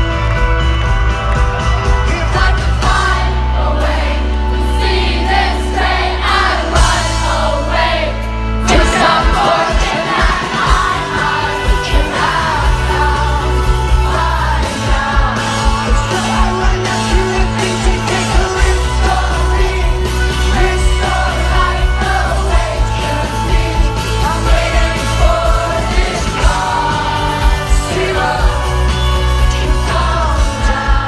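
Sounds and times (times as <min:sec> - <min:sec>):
live rock band playing: 0:00.0 - 0:31.0
steady bass line: 0:00.0 - 0:31.0
person singing: 0:08.6 - 0:31.0.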